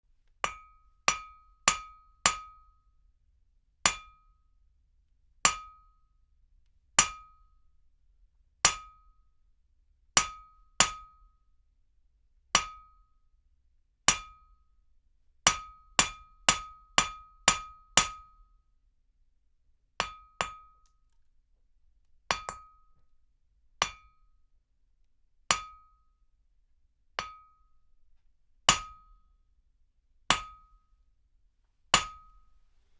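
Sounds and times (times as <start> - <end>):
hammer striking metal: 32.0 - 32.3.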